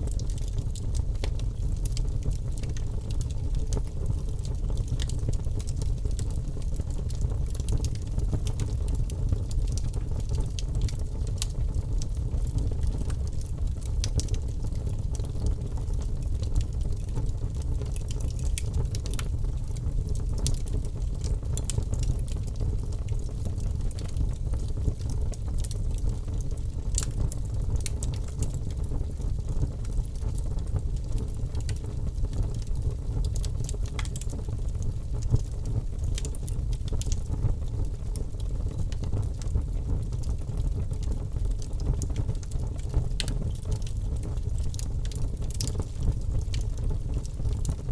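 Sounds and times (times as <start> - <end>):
fire low rumble: 0.0 - 47.9
wood fire crackling: 0.0 - 47.9.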